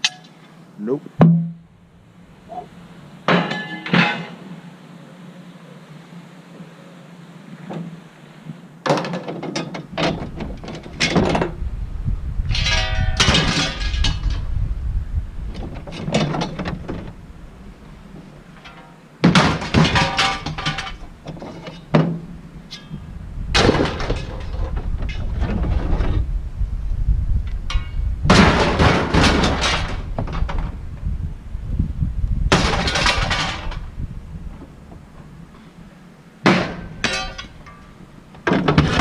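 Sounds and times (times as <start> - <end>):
scrap metal clattering onto pile: 3.3 - 4.4, 12.5 - 14.4, 18.6 - 23.0, 23.6 - 26.2, 27.7 - 30.8, 32.5 - 33.9, 36.5 - 39.0
low rumble: 10.2 - 18.2, 22.3 - 35.5.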